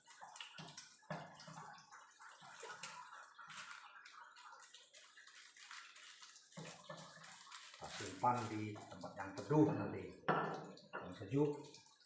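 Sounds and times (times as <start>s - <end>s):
liquid being stirred: 0.0s - 12.0s.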